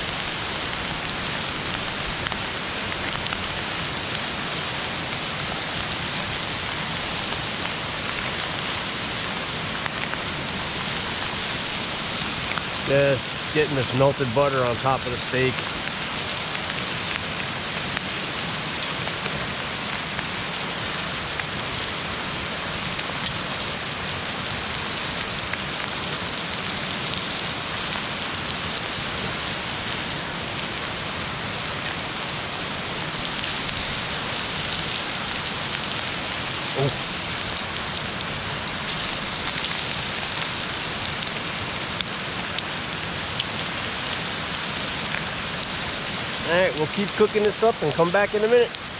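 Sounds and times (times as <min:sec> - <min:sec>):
steak sizzling in a skillet: 0:38.7 - 0:40.6.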